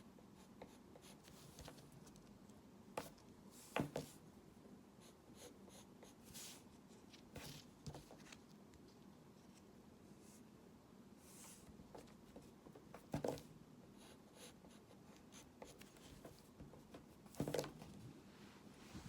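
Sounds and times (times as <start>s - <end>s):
pen scratching on paper: 14.0s - 17.0s.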